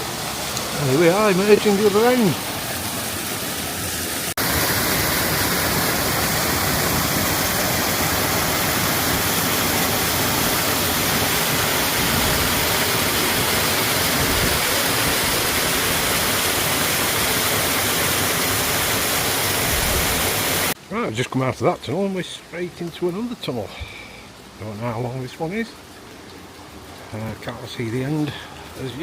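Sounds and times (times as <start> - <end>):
waterfall rushing: 0.0 - 21.1.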